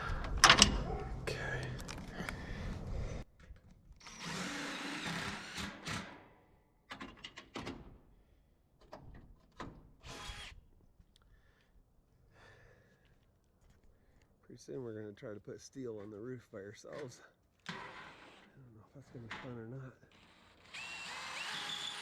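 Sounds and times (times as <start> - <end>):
power drill running: 4.0 - 6.2, 20.1 - 22.0.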